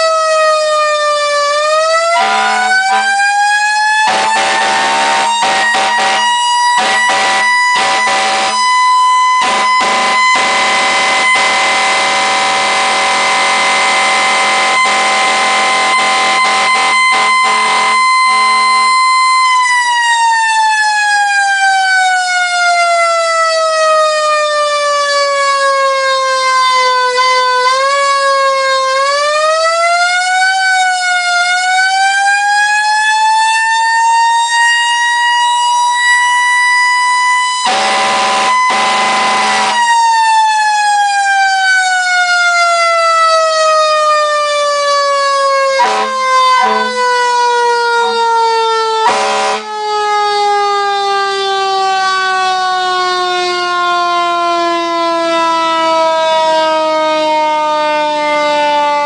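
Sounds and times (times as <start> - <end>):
mechanical siren wailing: 0.0 - 59.0
air horn blasts: 2.1 - 3.2, 4.0 - 8.7, 9.4 - 19.1, 37.6 - 39.9, 45.7 - 47.3, 49.0 - 49.8.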